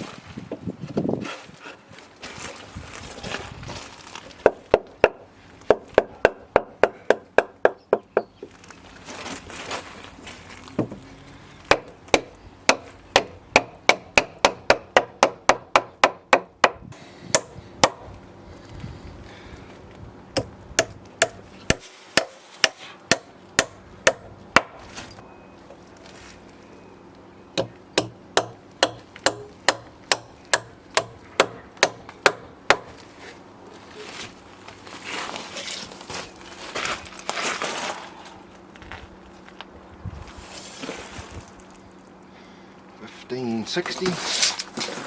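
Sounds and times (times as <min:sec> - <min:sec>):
hammer driving nails into timber: 0:11.7 - 0:18.0, 0:20.4 - 0:24.8, 0:27.6 - 0:33.0.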